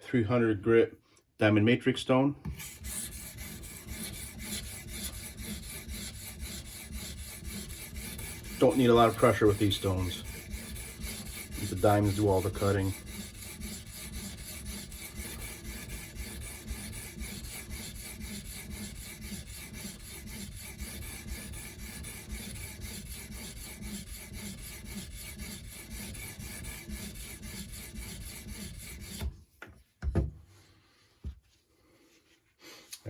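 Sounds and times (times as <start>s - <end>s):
sharpening stone rasping on knife: 2.6s - 29.2s.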